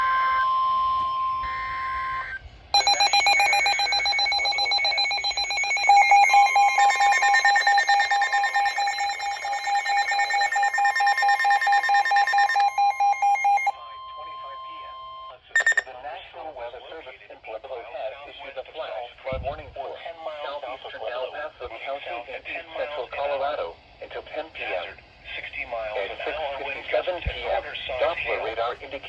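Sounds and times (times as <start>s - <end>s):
steady warning tone: 2.8s - 15.0s, 15.6s - 15.8s
fast pulsing alarm beeps: 2.8s - 15.8s.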